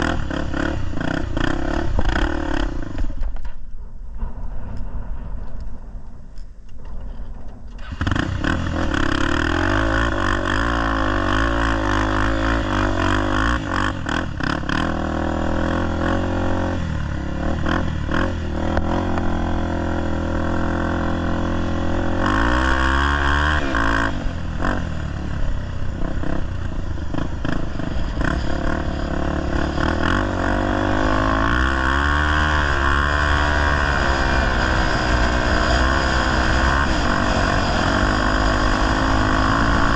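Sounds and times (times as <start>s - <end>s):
motorcycle engine revving: 0.0s - 3.4s, 7.8s - 39.9s.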